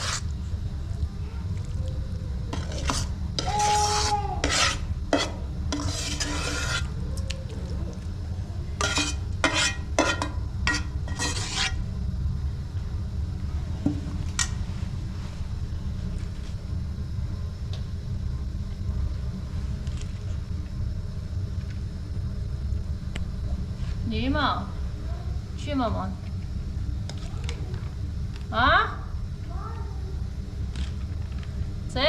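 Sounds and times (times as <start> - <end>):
utensil scraping in a pot: 0.0 - 0.3, 2.5 - 7.0, 8.8 - 11.9
steady low rumble: 11.8 - 32.0.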